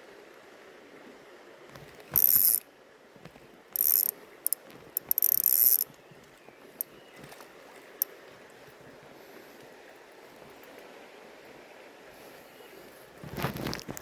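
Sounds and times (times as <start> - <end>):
reel clicks: 1.7 - 2.6, 3.2 - 8.4, 13.5 - 14.0
spinning reel ratcheting whir: 1.7 - 2.6, 3.8 - 6.0.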